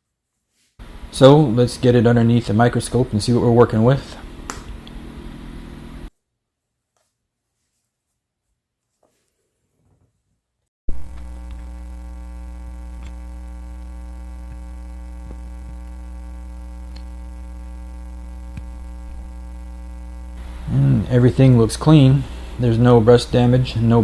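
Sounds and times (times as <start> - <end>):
electrical mains hum: 0.8 - 6.1, 10.9 - 24.0
faint clicks: 4.0 - 5.8, 10.9 - 19.4.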